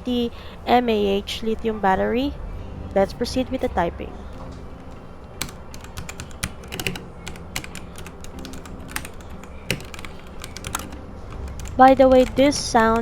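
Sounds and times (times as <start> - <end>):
mechanical keyboard typing clacks: 4.4 - 13.0.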